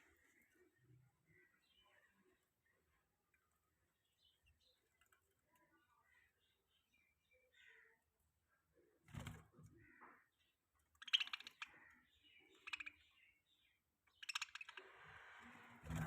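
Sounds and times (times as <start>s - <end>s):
budgies chattering: 11.0s - 15.0s.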